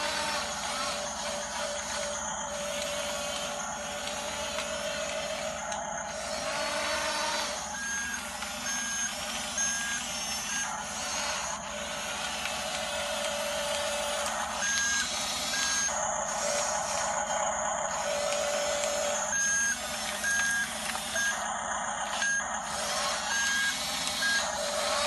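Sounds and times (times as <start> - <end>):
model bulldozer motor whine: 0.0 - 25.0
reversing beeper beeps: 7.5 - 10.8, 13.9 - 16.0, 18.1 - 25.0.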